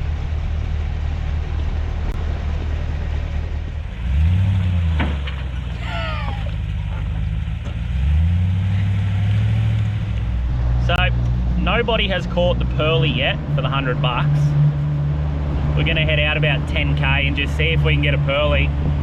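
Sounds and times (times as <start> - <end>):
motor engine revving: 0.0 - 19.0
wind noise: 14.3 - 19.0.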